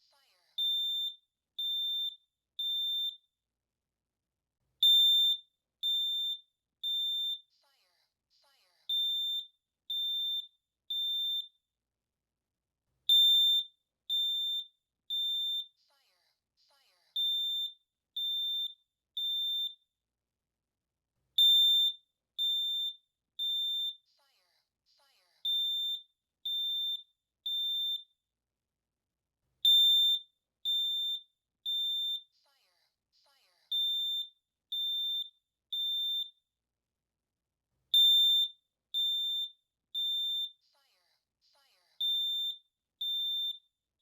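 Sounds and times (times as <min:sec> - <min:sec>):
smoke alarm shrill beeps: 0:00.6 - 0:03.3, 0:04.8 - 0:07.5, 0:08.9 - 0:11.7, 0:13.1 - 0:15.8, 0:17.2 - 0:19.9, 0:21.4 - 0:24.1, 0:25.4 - 0:28.2, 0:29.6 - 0:32.3, 0:33.7 - 0:36.5, 0:37.9 - 0:40.6, 0:42.0 - 0:43.8.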